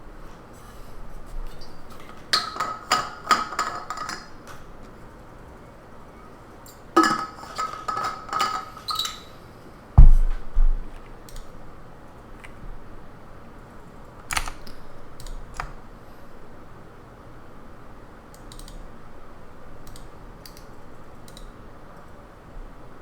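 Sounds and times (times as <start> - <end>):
hard objects clinking: 2.3 - 4.4, 7.0 - 8.9
heavy thump: 10.0 - 11.0.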